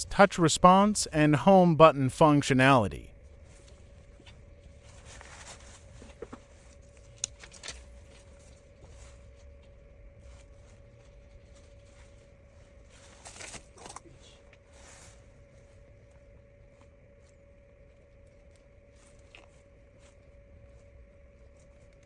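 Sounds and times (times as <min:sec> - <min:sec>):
faint steady hum: 0:00.0 - 0:22.0
small parts clicking and rustling: 0:03.6 - 0:09.7.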